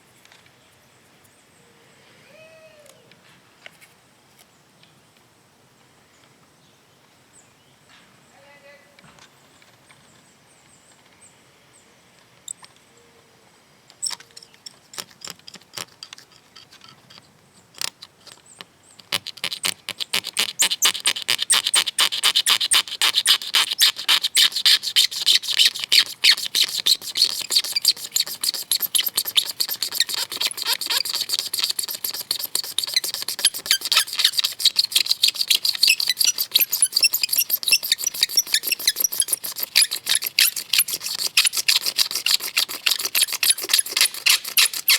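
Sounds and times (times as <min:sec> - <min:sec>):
blade scraping resin off glass: 0:17.8 - 0:44.9.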